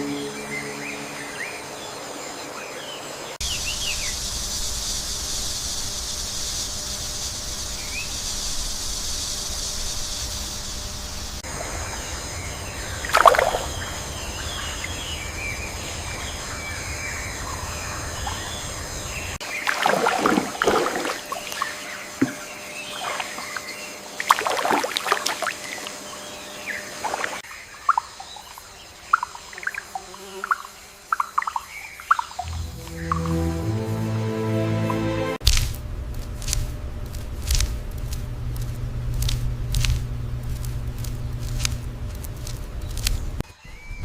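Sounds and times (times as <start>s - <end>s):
water splashing: 13.0s - 14.8s, 19.4s - 33.4s.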